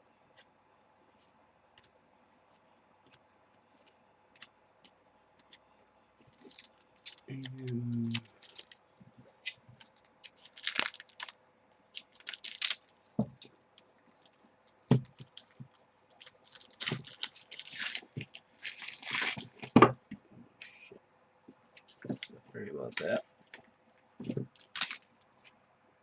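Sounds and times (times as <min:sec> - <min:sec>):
foil pack tearing and crinkling: 0:06.3 - 0:08.8, 0:09.4 - 0:11.3, 0:12.0 - 0:13.0, 0:16.2 - 0:19.8, 0:24.5 - 0:25.1.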